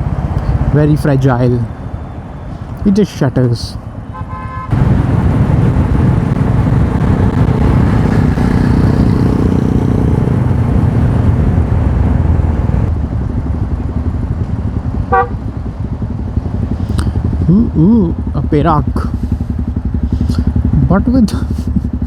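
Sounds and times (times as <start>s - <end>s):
wind rush on microphone: 4.7s - 18.4s
motorcycle engine running: 4.7s - 22.0s.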